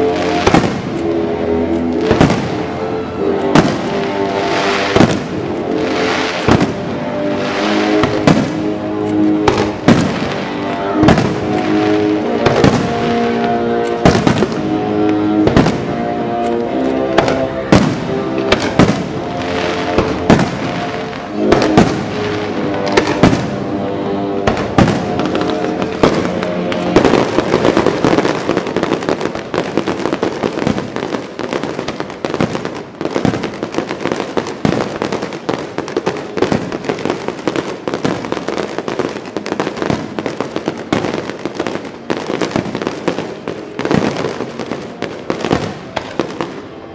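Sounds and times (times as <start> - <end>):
loud music: 0.0 - 31.1
fireworks bursting: 0.0 - 46.9
dense rapid crackling: 15.5 - 46.6.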